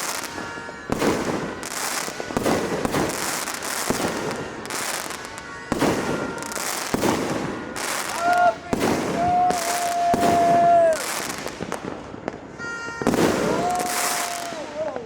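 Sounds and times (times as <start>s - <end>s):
firecrackers crackling: 0.0s - 15.0s
fireworks bangs: 0.0s - 15.0s.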